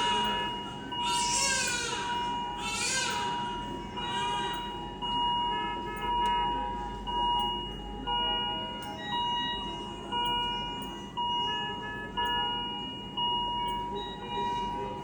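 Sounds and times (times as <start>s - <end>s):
medical alarm beeping: 0.0s - 15.0s
overlapping short beeps: 3.3s - 15.0s.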